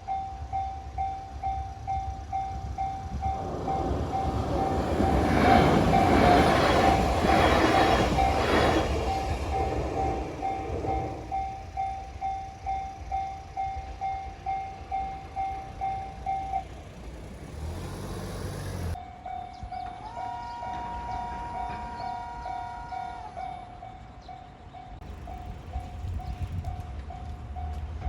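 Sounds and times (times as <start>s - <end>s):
train wheels clattering: 2.8s - 16.9s.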